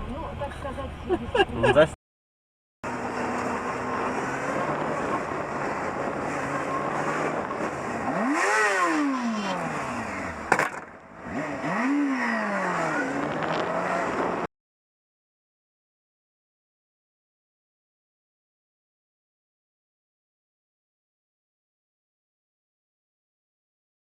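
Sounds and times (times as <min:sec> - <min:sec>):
road traffic noise: 0:02.8 - 0:14.5
vehicle engine revving: 0:02.8 - 0:14.5.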